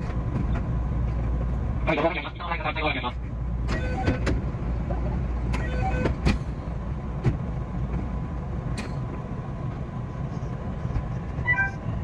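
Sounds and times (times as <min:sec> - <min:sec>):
electric train rumbling: 0:00.0 - 0:12.0.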